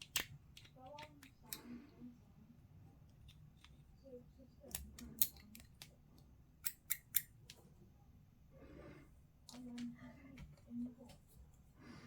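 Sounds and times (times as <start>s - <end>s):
cutters snipping plastic parts: 0.0s - 1.6s.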